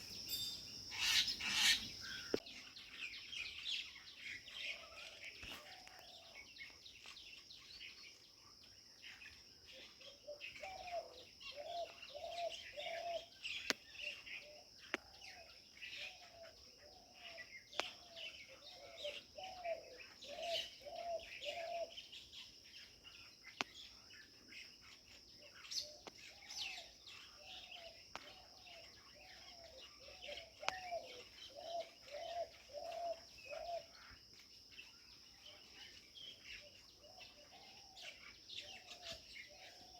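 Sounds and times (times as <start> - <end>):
high insect drone: 0.0 - 6.2
birds chirping: 0.0 - 39.9.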